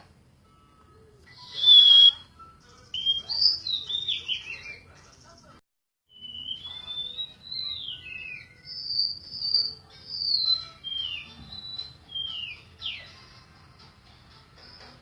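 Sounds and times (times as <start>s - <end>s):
bird singing high whistled notes: 1.3s - 4.8s, 6.1s - 13.1s.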